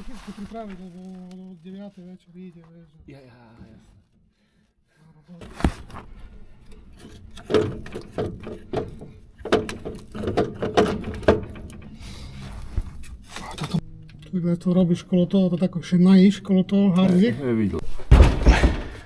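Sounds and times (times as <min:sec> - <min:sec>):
tools knocking and clattering: 0:06.7 - 0:12.0.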